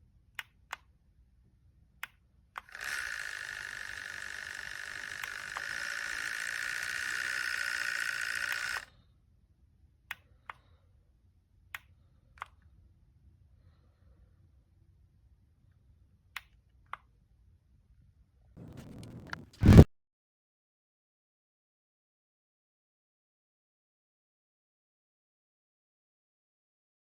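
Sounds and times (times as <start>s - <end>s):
small fan whirring: 2.6s - 8.9s.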